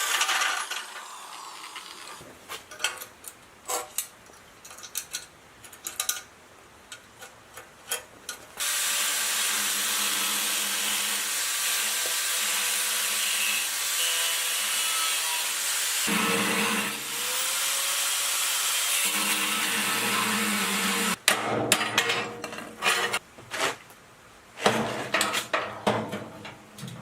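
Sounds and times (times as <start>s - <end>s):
tools clicking and knocking: 2.7s - 6.3s
power tool running hissily: 8.6s - 21.2s.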